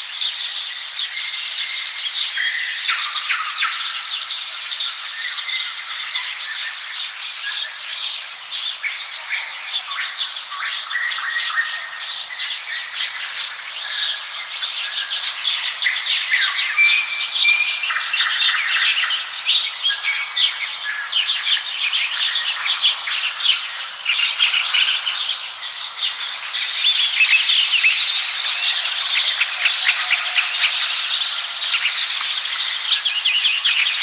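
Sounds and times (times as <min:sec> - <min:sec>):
forest birds chirping: 0:00.0 - 0:34.0.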